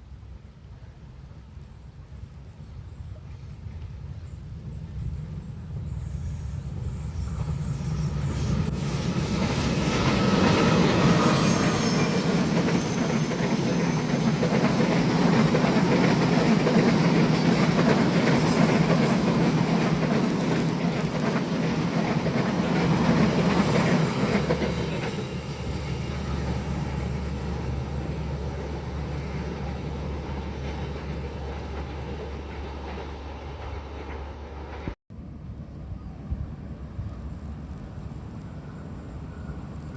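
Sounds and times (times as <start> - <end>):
train wheels rumbling and rattling: 3.1 - 35.0.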